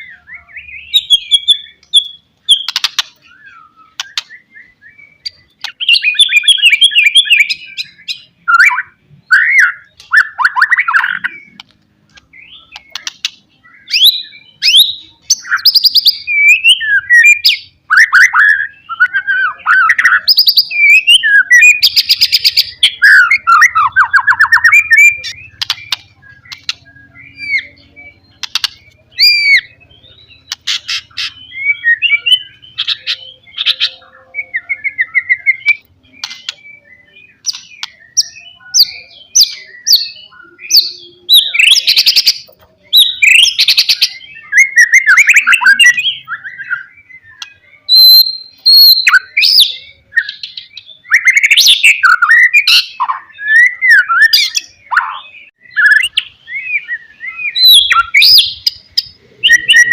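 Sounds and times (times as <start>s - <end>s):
bird singing whistled phrases: 0.0s - 11.6s, 12.3s - 59.9s.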